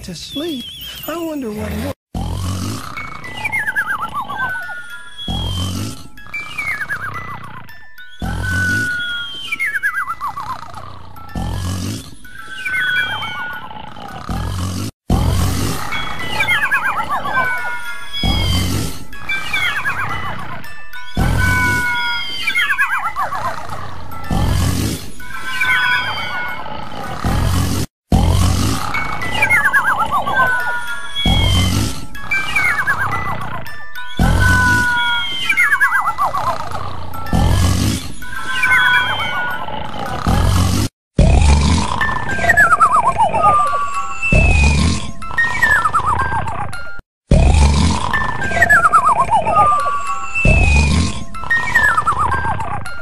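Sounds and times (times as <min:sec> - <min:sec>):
cartoon snoring with whistle: 0:01.6 - 0:53.0.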